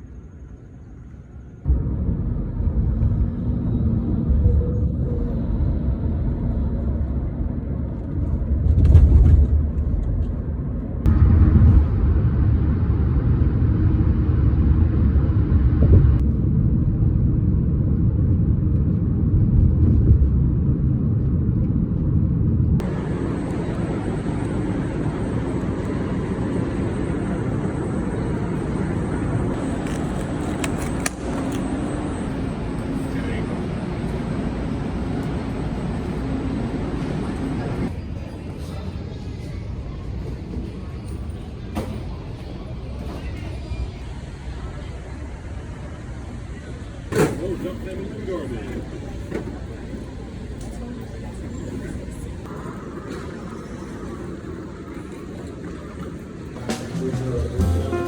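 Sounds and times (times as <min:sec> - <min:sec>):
low vehicle rumble: 0:01.5 - 0:38.0.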